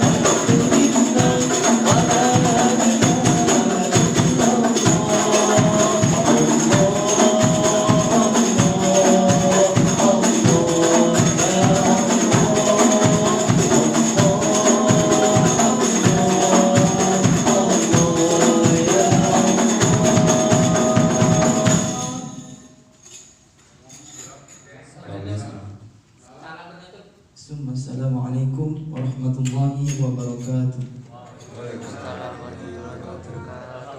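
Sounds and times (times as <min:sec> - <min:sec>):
frame drums: 0:00.0 - 0:23.4
jingling tambourine: 0:00.0 - 0:24.6.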